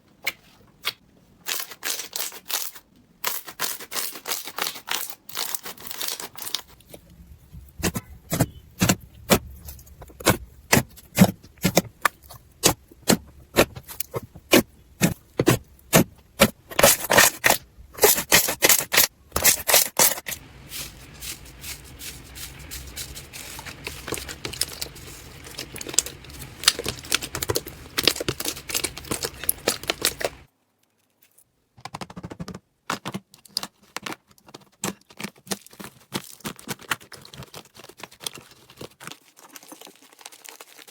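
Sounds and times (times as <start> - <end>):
slime clicking and crackling: 7.8 - 30.5, 34.8 - 40.9.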